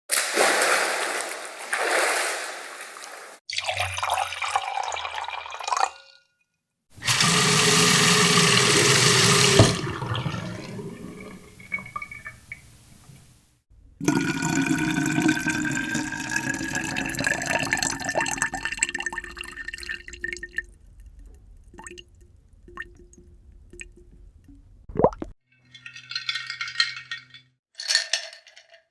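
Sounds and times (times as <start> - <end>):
water pouring into vessel: 3.5 - 6.2, 7.0 - 12.7, 14.0 - 25.3
water rushing: 7.0 - 12.6
water dripping: 8.4 - 13.4, 14.0 - 25.4.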